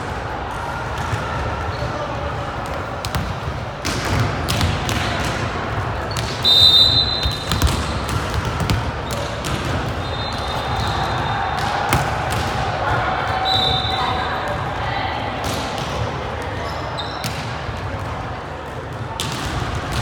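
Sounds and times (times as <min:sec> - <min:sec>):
crowd noise: 0:00.0 - 0:20.0
referee's whistle: 0:06.1 - 0:08.1, 0:09.1 - 0:11.7, 0:13.3 - 0:14.3
volleyball being hit and bouncing: 0:07.0 - 0:12.9.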